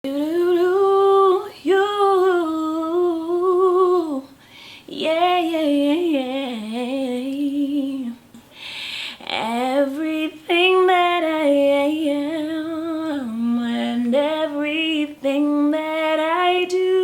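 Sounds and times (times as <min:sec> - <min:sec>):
woman singing: 0:00.0 - 0:08.3, 0:09.2 - 0:17.0
breath: 0:04.4 - 0:04.9, 0:08.4 - 0:09.2.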